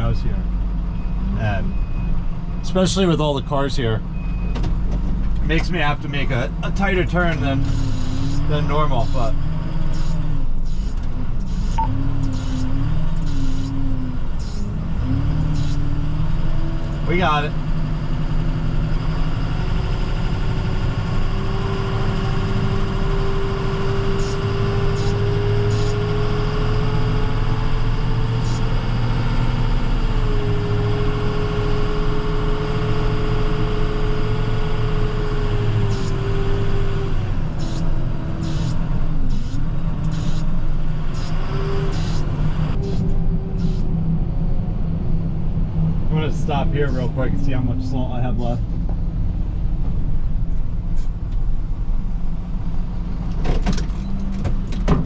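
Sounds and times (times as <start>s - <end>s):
truck engine running under load: 0.0s - 55.0s
steady whine: 37.5s - 52.3s.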